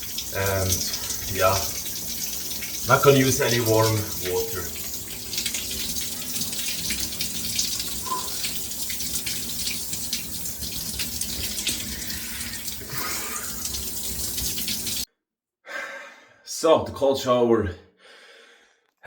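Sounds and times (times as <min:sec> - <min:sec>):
shower water spraying: 0:00.0 - 0:15.1.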